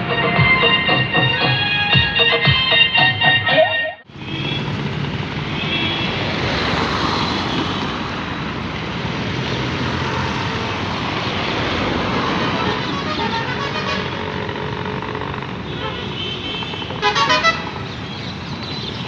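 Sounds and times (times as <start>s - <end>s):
bus engine and road noise: 0.0s - 3.4s, 4.0s - 19.0s
music: 0.0s - 4.0s.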